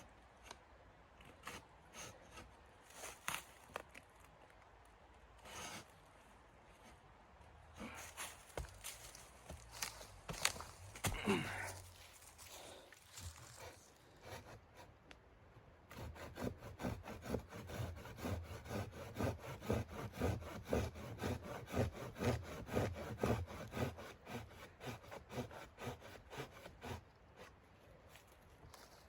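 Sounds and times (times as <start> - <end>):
hand saw cutting wood: 1.3 - 3.2, 5.4 - 5.9, 13.5 - 14.9, 15.9 - 27.6.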